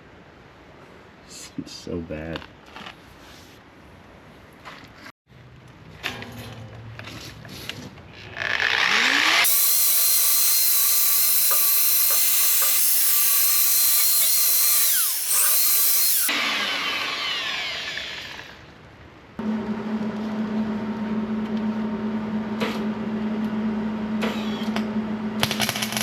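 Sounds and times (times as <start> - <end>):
angle grinder grinding steel: 8.3 - 18.5.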